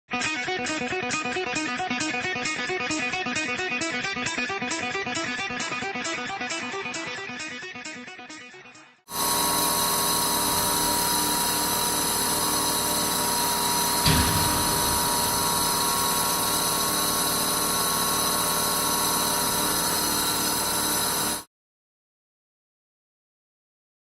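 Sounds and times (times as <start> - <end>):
hydraulic machine hum with whining: 9.1 - 21.5.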